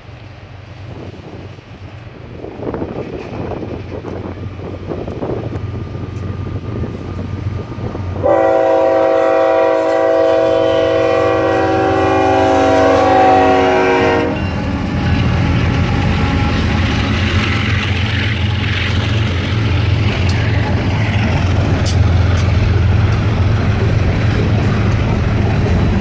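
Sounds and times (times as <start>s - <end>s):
diesel engines droning: 4.5s - 26.0s
locomotive air horn blast: 8.2s - 14.9s.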